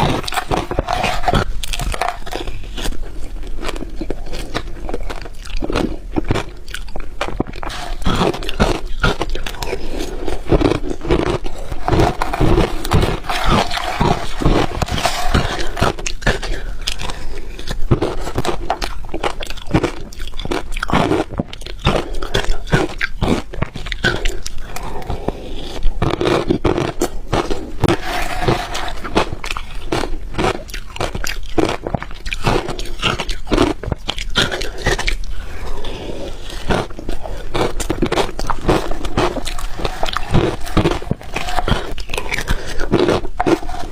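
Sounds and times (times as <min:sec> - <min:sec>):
chewing hard ice: 0:00.0 - 0:43.9.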